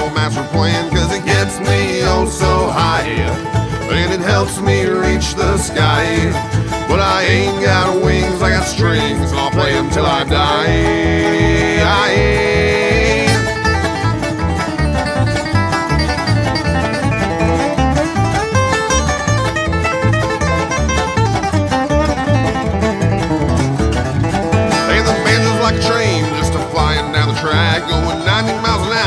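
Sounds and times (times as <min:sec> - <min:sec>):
fast banjo picking: 0:00.0 - 0:29.0
guitar: 0:00.0 - 0:29.0
bass thumping steady beat: 0:05.5 - 0:29.0.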